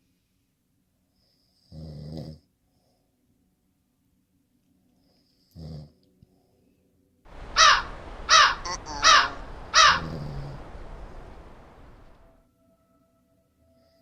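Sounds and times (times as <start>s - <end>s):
crow cawing: 7.3s - 12.3s
faint hiss: 7.3s - 12.4s.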